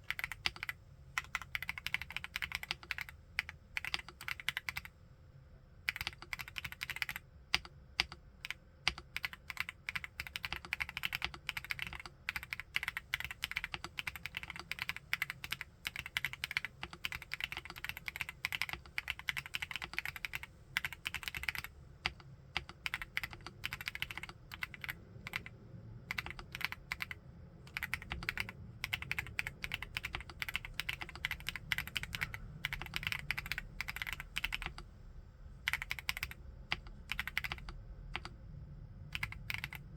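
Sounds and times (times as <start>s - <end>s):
typing on mechanical keyboard: 0.0s - 4.9s, 5.9s - 34.8s, 35.7s - 38.3s, 39.1s - 39.9s.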